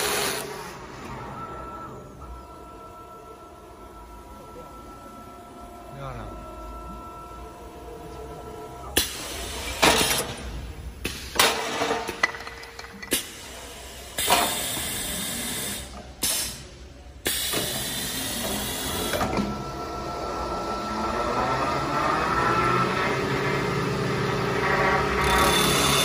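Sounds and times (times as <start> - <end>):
machine whine: 0.0 - 10.9, 17.6 - 26.0.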